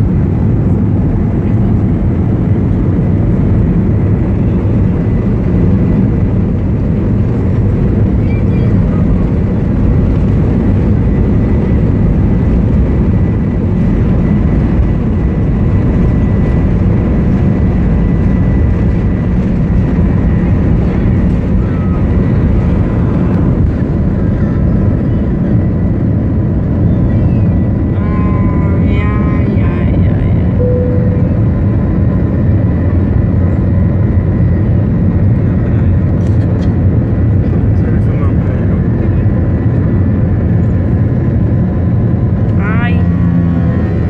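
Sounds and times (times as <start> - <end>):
jet engine rumble and whine: 0.0 - 44.0.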